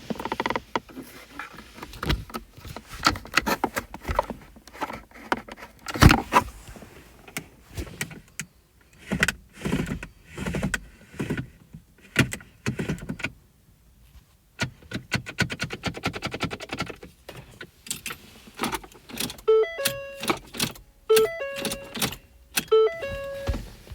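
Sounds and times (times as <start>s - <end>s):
beeping warning chime: 19.5s - 20.4s, 21.1s - 23.9s.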